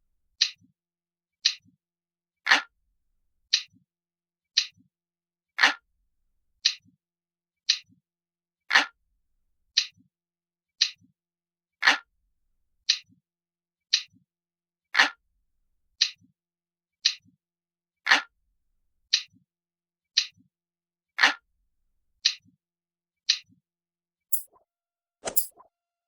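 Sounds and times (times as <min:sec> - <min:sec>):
sharp high click: 0:24.3 - 0:24.6, 0:25.2 - 0:25.6.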